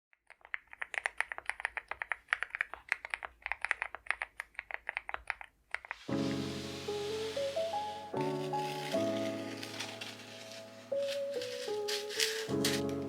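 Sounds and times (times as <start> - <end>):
fast typing on mechanical keyboard: 0.2 - 6.0
background music: 6.0 - 13.0.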